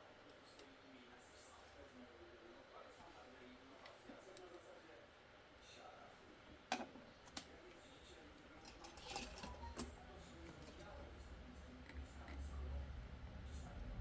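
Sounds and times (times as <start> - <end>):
faint low rumble: 9.9 - 14.0.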